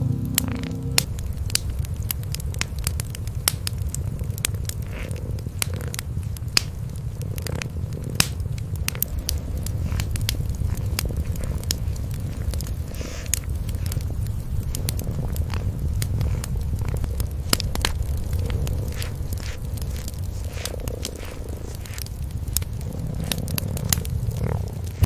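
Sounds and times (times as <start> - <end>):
brief pitched sound: 0.0 - 1.1
cats purring: 0.0 - 25.0
wood fire crackling and popping: 0.1 - 25.0.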